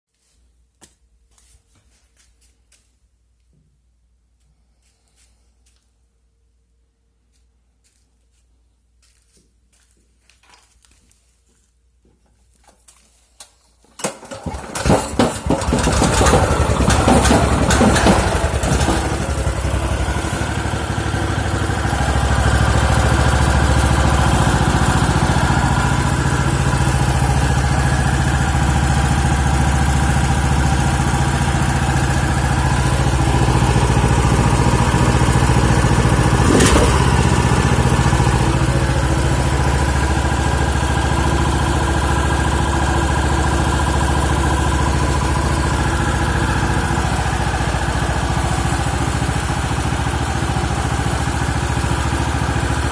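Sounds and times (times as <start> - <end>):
small engine starting and running: 14.0 - 52.9.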